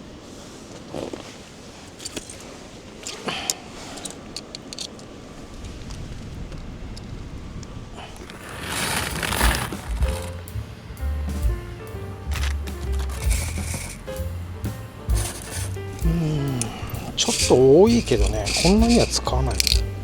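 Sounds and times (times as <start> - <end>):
camp gear clicks and scrapes: 0.4 - 6.2, 8.2 - 10.3, 12.3 - 14.0, 15.2 - 19.9
coffee beans being poured: 16.6 - 19.8.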